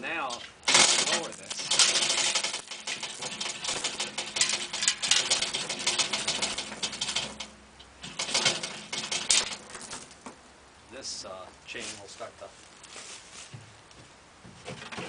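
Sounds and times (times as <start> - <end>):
metallic chain clatter through hoist: 0.2 - 10.1.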